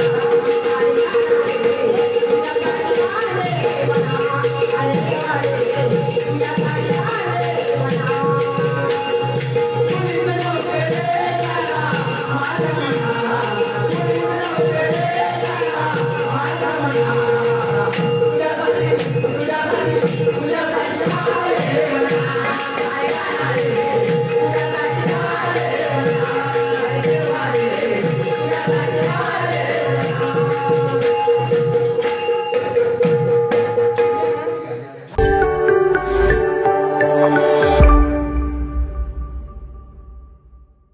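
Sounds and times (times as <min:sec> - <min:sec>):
group devotional singing: 0:00.0 - 0:31.2
rhythmic percussion: 0:00.0 - 0:40.8.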